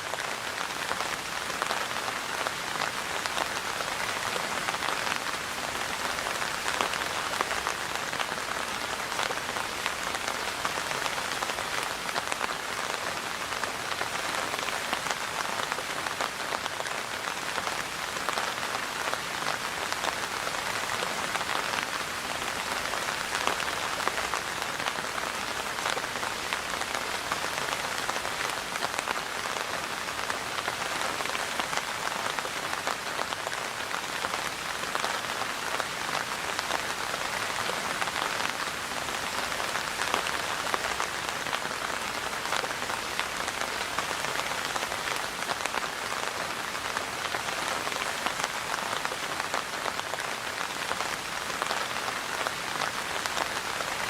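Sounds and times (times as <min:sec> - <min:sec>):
rain patter: 0:00.0 - 0:54.0.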